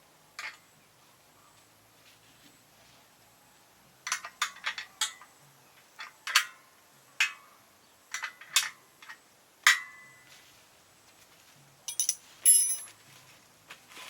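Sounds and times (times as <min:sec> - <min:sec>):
hard objects clinking together: 0:11.9 - 0:13.0.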